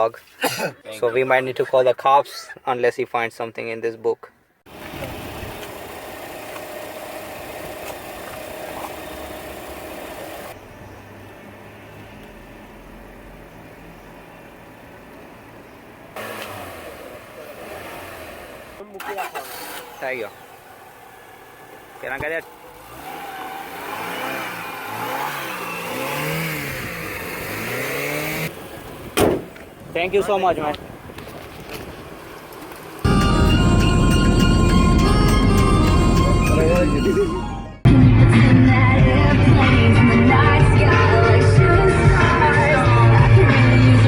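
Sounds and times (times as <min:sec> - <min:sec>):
car engine idling: 0:04.7 - 0:38.0
car engine revving: 0:16.1 - 0:29.6.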